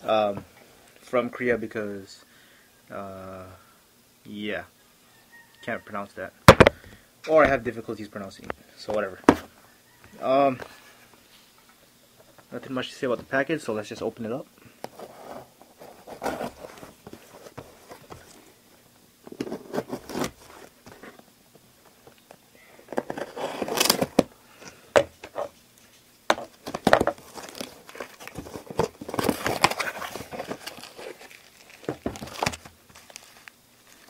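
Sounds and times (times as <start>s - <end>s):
package being torn open: 22.9s - 24.3s, 26.7s - 34.0s.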